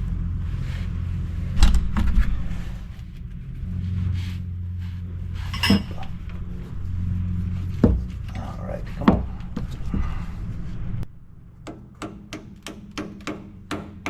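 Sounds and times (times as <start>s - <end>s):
steady low hum: 0.0s - 11.7s
hammer tapping metal wrench: 5.5s - 6.0s.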